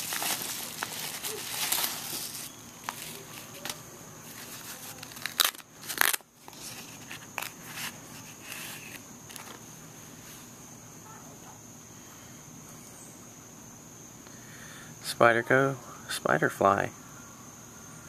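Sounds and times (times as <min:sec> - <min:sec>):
packaging rustling and crinkling: 0:00.0 - 0:09.6.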